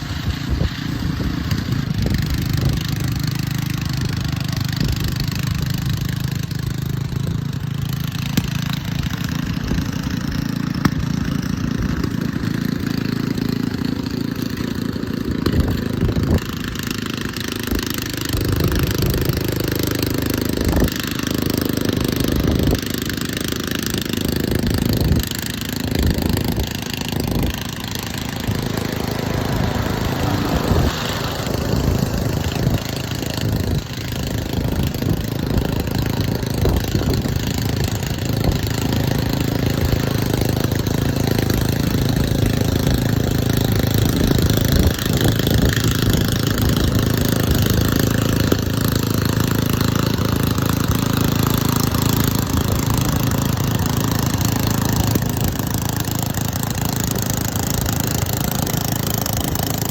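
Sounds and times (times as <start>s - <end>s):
engine idling: 0.0s - 59.9s.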